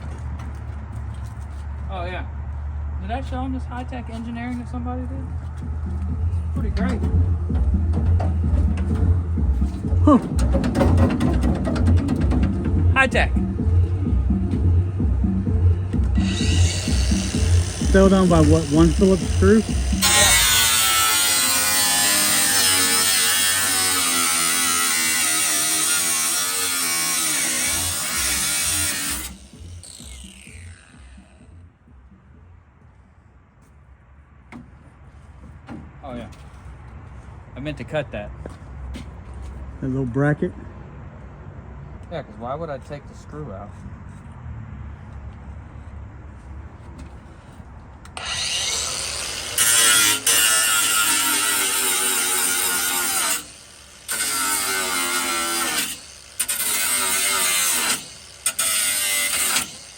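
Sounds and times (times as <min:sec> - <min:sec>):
angle grinder cutting metal: 0:16.0 - 0:31.6, 0:48.1 - 0:59.9.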